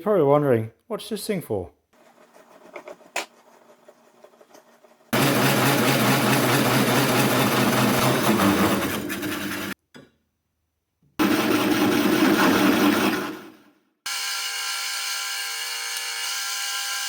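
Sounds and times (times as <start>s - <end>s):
power tool cutting steel: 14.1s - 17.0s.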